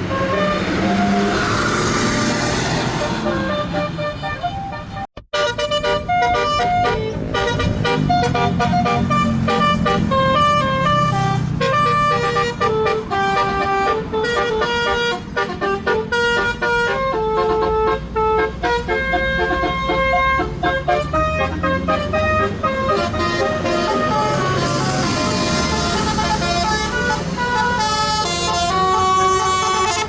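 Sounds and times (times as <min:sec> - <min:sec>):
bus engine rumble: 0:00.0 - 0:30.0
musical bus horn melody: 0:00.0 - 0:30.0.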